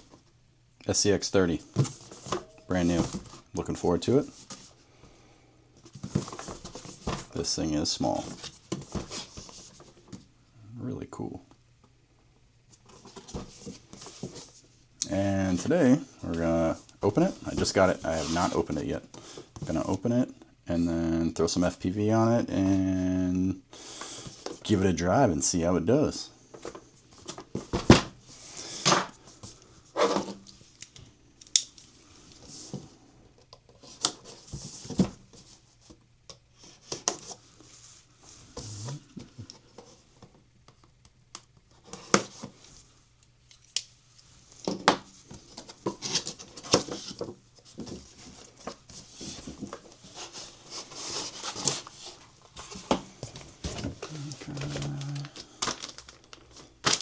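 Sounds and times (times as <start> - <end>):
cardboard and plastic rustling: 1.5 - 4.8, 5.8 - 10.3, 12.7 - 20.0, 24.0 - 24.7, 26.5 - 30.8, 31.8 - 36.0, 44.4 - 57.0.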